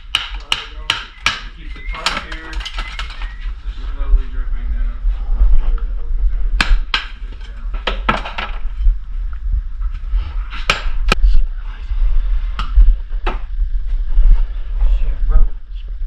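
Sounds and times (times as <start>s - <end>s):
hand tools scraping and knocking: 1.0s - 3.4s
steady low rumble: 3.0s - 16.0s.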